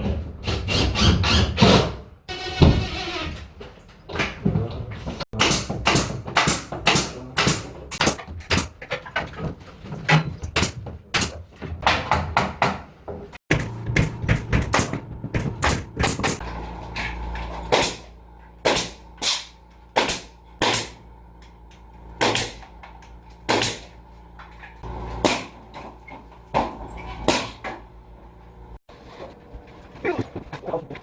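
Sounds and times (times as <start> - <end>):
pneumatic nail gun firing: 0.4 - 3.1, 5.4 - 8.7, 17.7 - 21.0, 22.2 - 22.6, 23.5 - 24.0.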